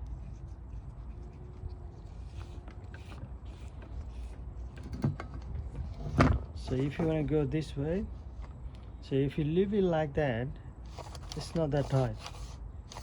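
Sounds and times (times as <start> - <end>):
clicks and scrapes of handling: 0.0 - 7.2, 10.9 - 13.0.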